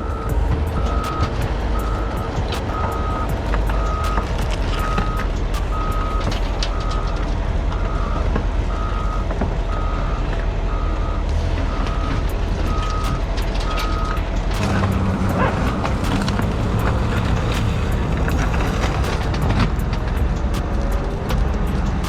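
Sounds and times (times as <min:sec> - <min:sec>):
reversing alarm beeping: 0:00.0 - 0:07.2, 0:07.8 - 0:18.0
diesel engine running: 0:00.0 - 0:22.0.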